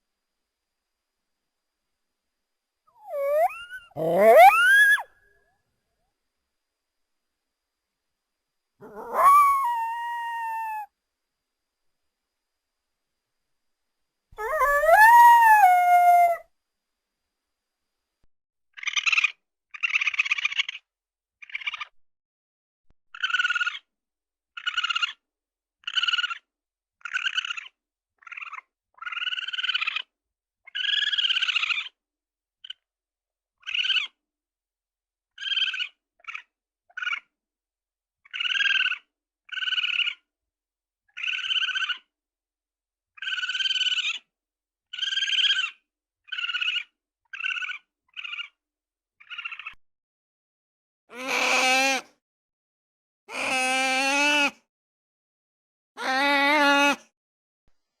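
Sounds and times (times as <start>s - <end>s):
raspy chirp-like creature calls: 3.0s - 5.1s, 8.8s - 10.9s, 14.4s - 16.4s, 49.2s - 49.8s, 51.1s - 52.1s, 53.3s - 54.6s, 56.0s - 57.0s
rising and falling creature call: 3.0s - 5.1s, 8.8s - 10.9s, 14.4s - 16.4s.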